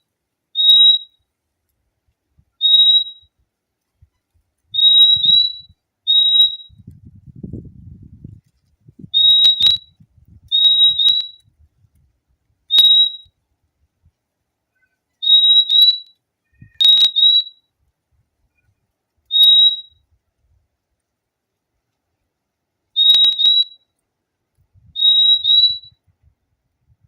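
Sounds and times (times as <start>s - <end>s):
bird whistled notes: 0.6s - 1.2s, 2.6s - 3.3s, 4.7s - 6.8s, 9.0s - 11.4s, 12.7s - 13.3s, 14.8s - 17.6s, 19.3s - 20.0s, 23.0s - 23.8s, 24.8s - 26.0s.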